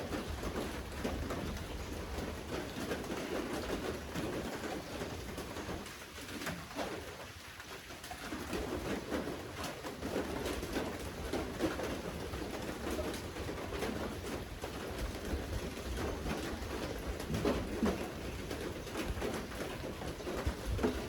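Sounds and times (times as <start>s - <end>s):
steady rain: 0.0s - 21.0s.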